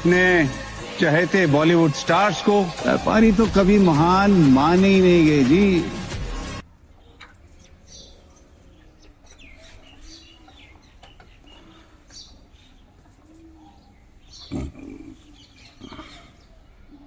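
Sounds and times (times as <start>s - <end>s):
birds chirping: 0.0s - 17.0s
low cooing calls: 7.0s - 17.0s.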